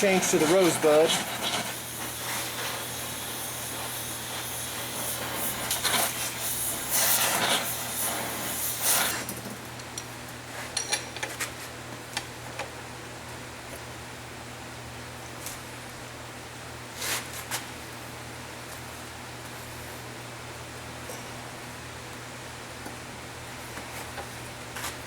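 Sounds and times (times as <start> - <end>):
torch flame hissing: 0.0 - 9.4.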